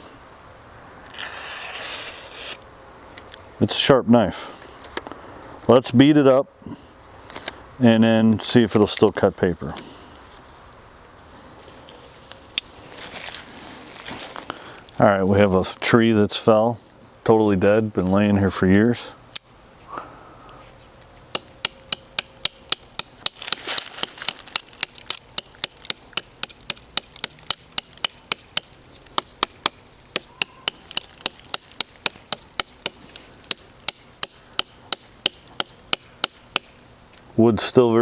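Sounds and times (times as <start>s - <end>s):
knife chopping into dry wood: 21.3s - 36.8s.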